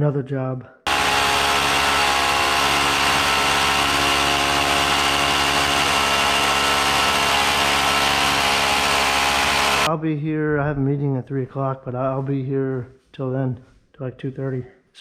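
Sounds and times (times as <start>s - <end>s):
hammer drill boring concrete: 0.9s - 9.9s.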